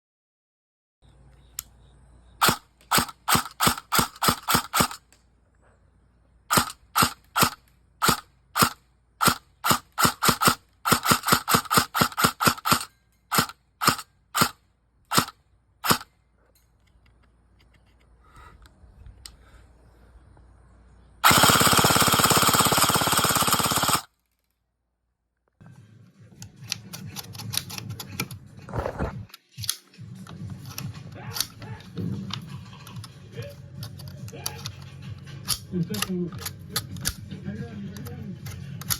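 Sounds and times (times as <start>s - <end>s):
airsoft gun firing: 2.4s - 5.0s, 6.5s - 16.1s, 21.2s - 24.1s.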